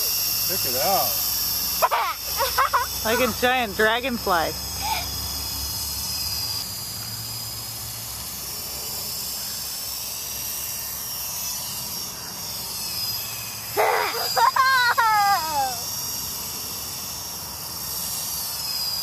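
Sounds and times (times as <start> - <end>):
toy helicopter rotor whine: 0.0 - 19.0
high-pitched vocal cry: 1.8 - 3.3, 13.8 - 15.9.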